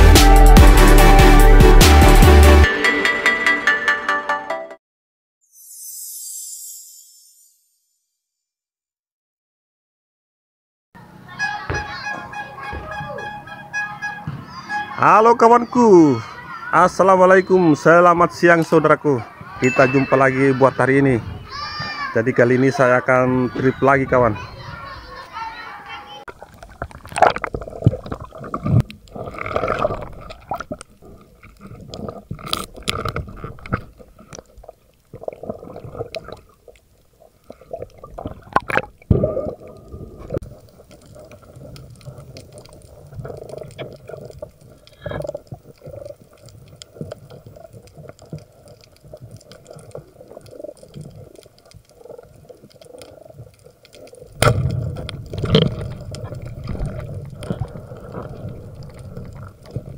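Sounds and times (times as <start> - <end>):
water sloshing and gurgling: 26.2 - 59.9
knocks and splashes: 37.6 - 40.5, 54.3 - 59.9.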